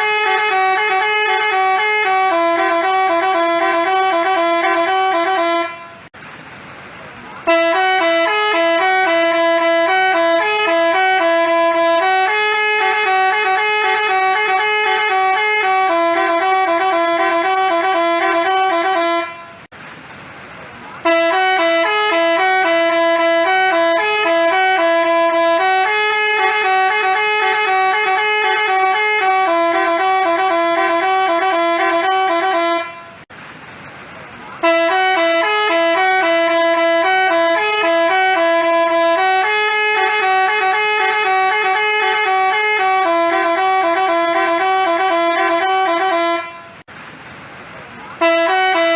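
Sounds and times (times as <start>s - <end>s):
bus horn playing a tune: 0.0s - 6.2s, 7.4s - 19.7s, 21.0s - 33.3s, 34.6s - 46.9s, 48.2s - 48.9s.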